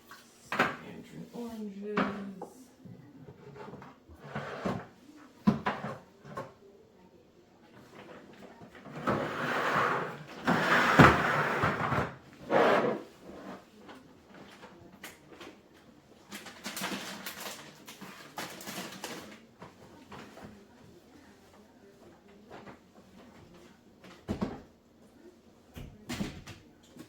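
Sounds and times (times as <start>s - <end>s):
packages rustling and scraping: 16.2s - 21.3s.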